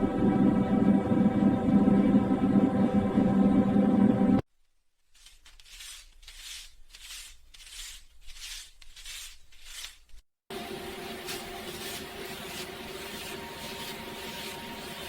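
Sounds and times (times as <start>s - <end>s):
banknotes swishing: 5.1s - 10.2s.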